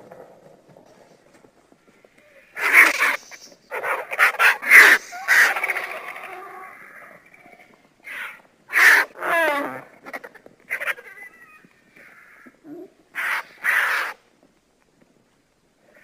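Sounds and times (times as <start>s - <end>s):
harsh creature screeches: 2.6s - 7.1s.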